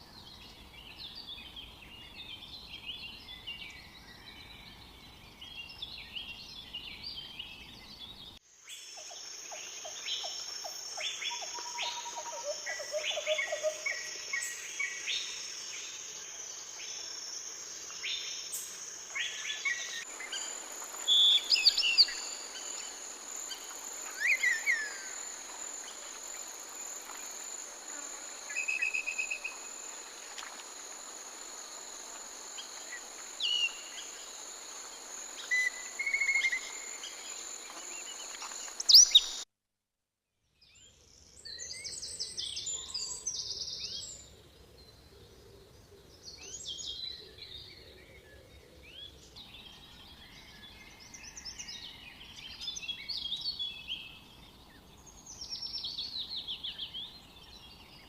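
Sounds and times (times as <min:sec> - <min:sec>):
high-pitched insect trill: 0:08.6 - 0:39.4
bird chirps and calls: 0:38.4 - 0:39.4.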